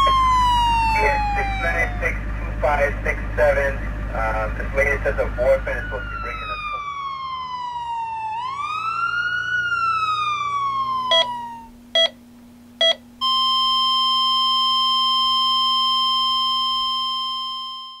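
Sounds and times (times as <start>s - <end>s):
siren wail: 0.0s - 2.6s, 4.9s - 11.8s, 13.2s - 18.0s
patient monitor beeps: 11.1s - 11.4s, 12.0s - 12.2s, 12.8s - 18.0s
monitor flatline tone: 11.1s - 12.2s, 12.8s - 18.0s.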